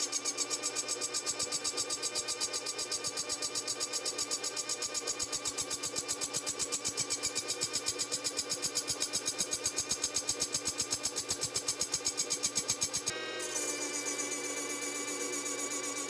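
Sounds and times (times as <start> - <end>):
drill press grinding metal shaft: 13.4 - 16.0.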